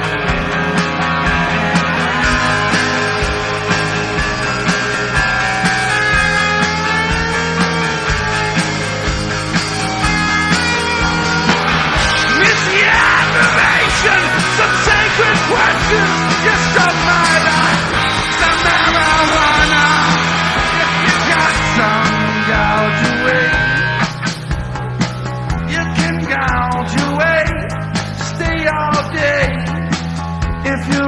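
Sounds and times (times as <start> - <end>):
rock music with singing: 0.0 - 31.0.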